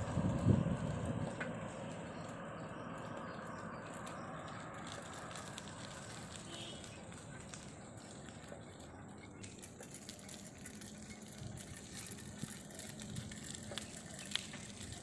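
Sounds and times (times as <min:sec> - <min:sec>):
small clicks: 0:03.8 - 0:15.0.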